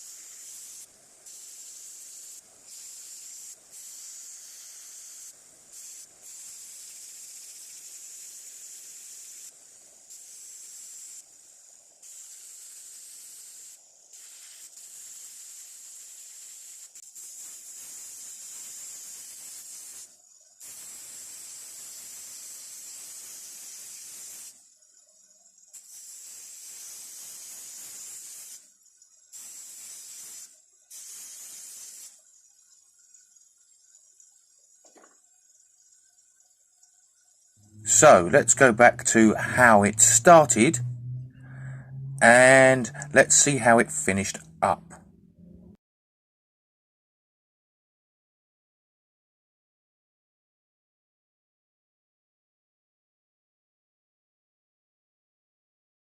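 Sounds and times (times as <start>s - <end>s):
spray hissing in bursts: 0.0s - 24.6s, 25.7s - 28.7s, 29.3s - 32.2s.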